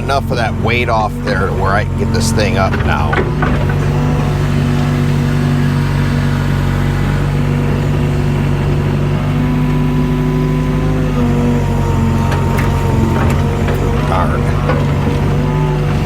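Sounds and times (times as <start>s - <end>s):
diesel engine running under load: 0.0s - 16.0s.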